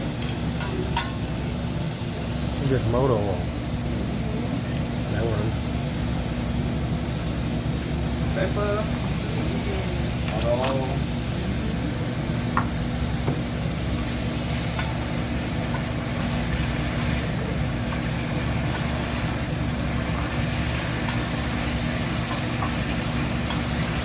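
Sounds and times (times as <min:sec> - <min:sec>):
food sizzling on a griddle: 0:00.0 - 0:24.0
metal utensils clicking on griddle: 0:00.6 - 0:01.2, 0:14.6 - 0:15.0, 0:20.9 - 0:24.0.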